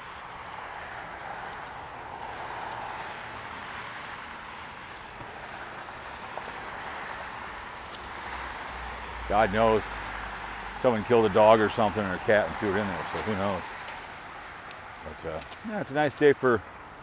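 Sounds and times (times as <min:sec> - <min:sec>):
distant road traffic hum: 0:00.0 - 0:17.0.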